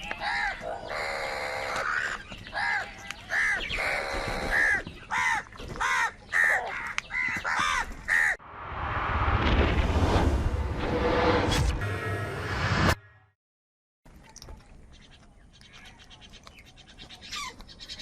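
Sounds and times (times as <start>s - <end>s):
crow cawing: 0.2s - 8.4s.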